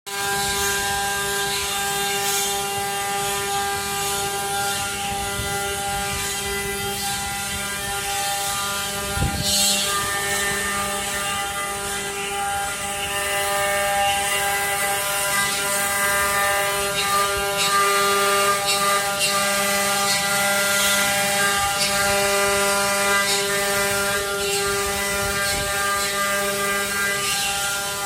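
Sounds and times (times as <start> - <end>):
carving machine whine: 0.1 - 28.0.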